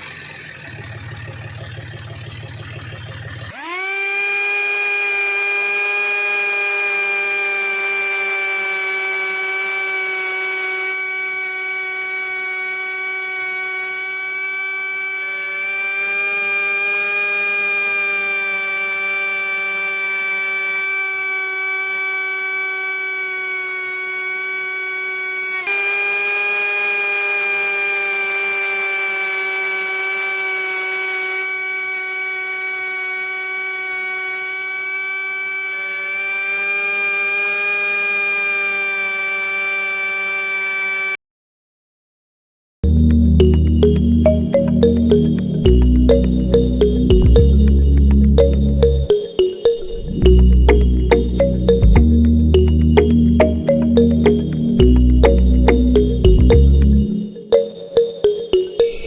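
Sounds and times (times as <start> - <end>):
small electric motor whining: 0.0 - 41.2.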